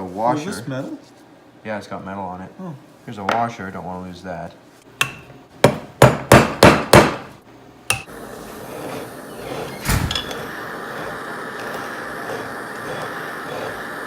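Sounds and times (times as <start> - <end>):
hammer striking metal: 5.0 - 7.3, 7.9 - 8.1.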